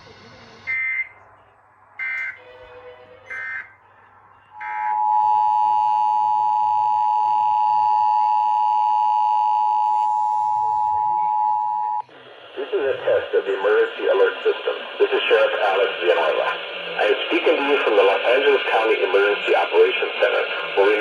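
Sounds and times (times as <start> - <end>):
two-tone attention signal: 2.0 - 3.8.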